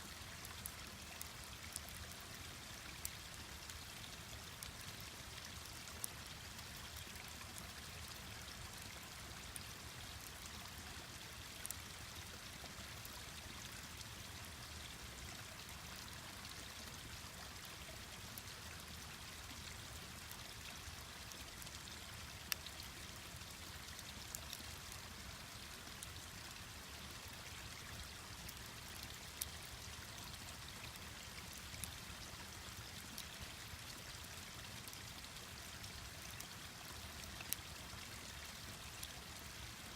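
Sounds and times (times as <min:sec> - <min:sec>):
mountain stream running: 0:00.0 - 0:39.9
campfire crackling and popping: 0:00.3 - 0:02.2, 0:18.4 - 0:25.2, 0:37.4 - 0:37.8.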